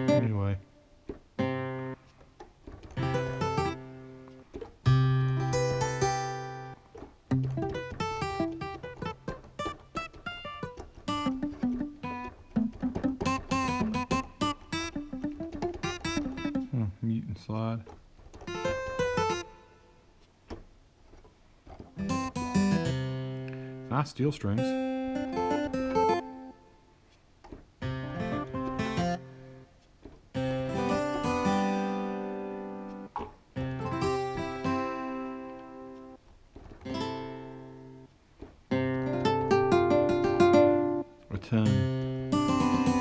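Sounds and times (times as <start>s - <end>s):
keyboard playing plucked guitar notes: 0.0s - 0.6s, 3.0s - 16.8s, 18.5s - 19.8s, 24.5s - 26.7s, 27.8s - 29.7s, 30.4s - 36.2s, 36.9s - 38.1s, 38.7s - 43.0s.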